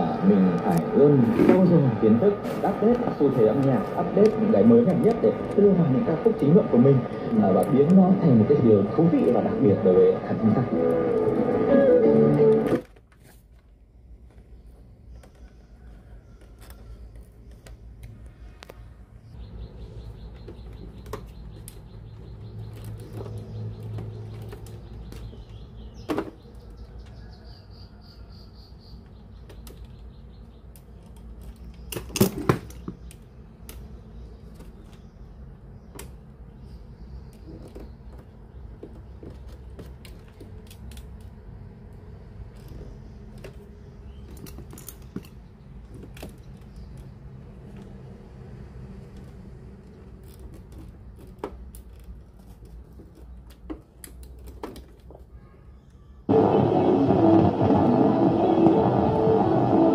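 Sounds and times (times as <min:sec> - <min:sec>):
low hum: 0:56.3 - 0:59.9.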